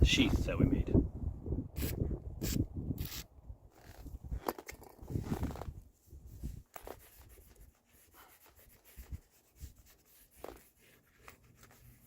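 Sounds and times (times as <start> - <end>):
faint rubbing on leather: 6.3 - 12.0.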